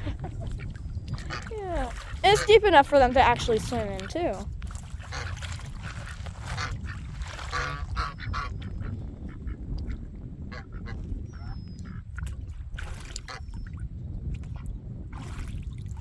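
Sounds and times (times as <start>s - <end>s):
ducks quacking: 0.0s - 4.4s, 5.0s - 9.6s
geese honking: 1.2s - 4.3s, 7.5s - 8.5s.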